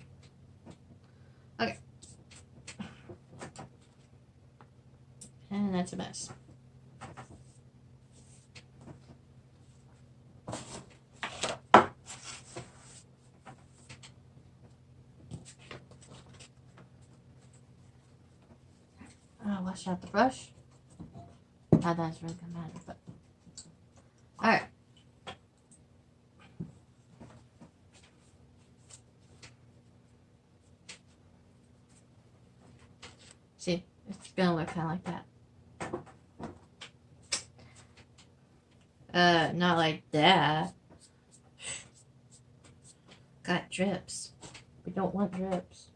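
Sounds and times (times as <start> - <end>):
quiet room hum: 0.0 - 45.9
rustling and scraping on tabletop: 7.0 - 14.2.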